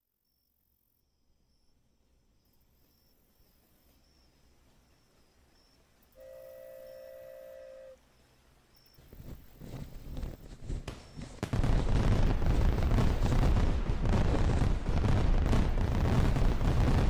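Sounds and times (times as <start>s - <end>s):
gunfire and explosions: 10.8s - 17.0s.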